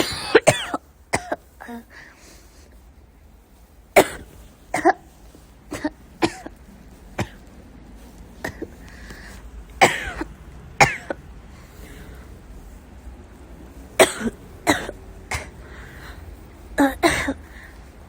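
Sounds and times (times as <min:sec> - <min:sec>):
girl coughing: 0:00.0 - 0:01.9, 0:04.0 - 0:05.1, 0:05.7 - 0:06.5, 0:09.8 - 0:11.2, 0:14.0 - 0:15.6, 0:16.8 - 0:17.4.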